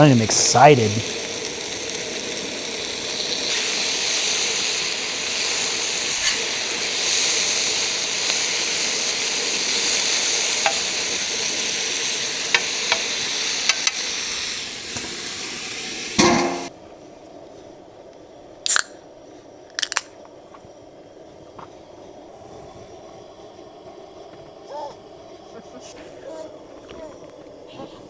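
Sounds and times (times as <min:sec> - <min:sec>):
food sizzling on a grill: 0:00.0 - 0:16.7.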